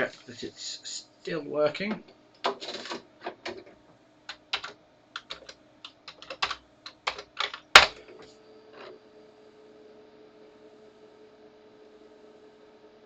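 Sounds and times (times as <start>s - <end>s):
typing on a keyboard: 4.3s - 7.6s.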